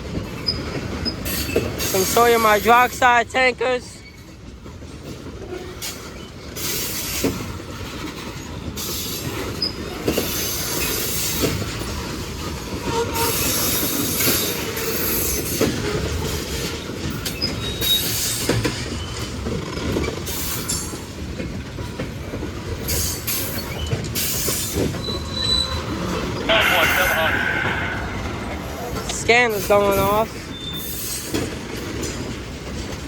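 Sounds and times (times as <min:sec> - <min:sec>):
wheel and rail rushing noise: 0:00.0 - 0:33.0
wheel squeaks: 0:23.0 - 0:26.4.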